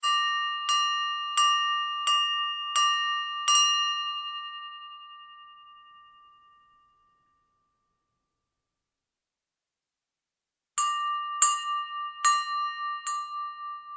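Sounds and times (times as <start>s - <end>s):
silverware tapping a ringing glass: 0.0s - 7.0s, 10.8s - 13.9s.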